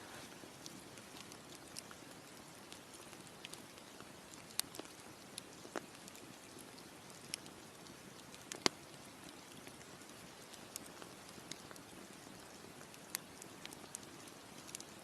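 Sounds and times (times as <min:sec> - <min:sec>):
campfire crackling: 0:00.0 - 0:15.0
faint steady hiss: 0:00.0 - 0:15.0.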